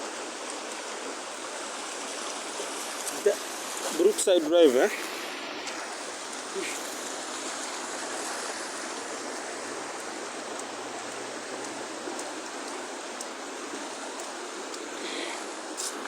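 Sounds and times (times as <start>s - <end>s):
floodwater rushing: 0.0s - 16.0s.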